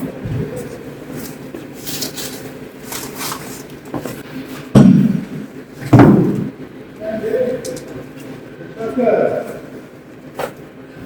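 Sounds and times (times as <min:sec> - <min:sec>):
parts scraping and rustling: 0:00.6 - 0:04.2
loud heavy thud: 0:04.8 - 0:06.6.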